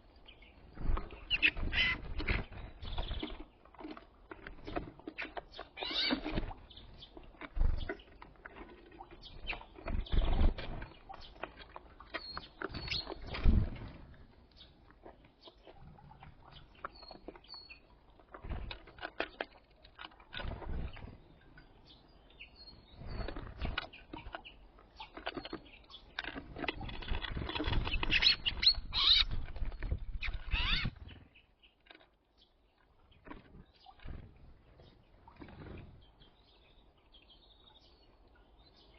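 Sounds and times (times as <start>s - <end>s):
bird chirp: 0.0s - 8.2s, 9.0s - 13.9s, 15.4s - 18.0s, 20.4s - 38.9s
wings fluttering: 0.6s - 3.5s, 9.2s - 11.5s, 12.3s - 14.0s, 20.3s - 21.2s, 26.8s - 31.4s, 33.3s - 34.8s.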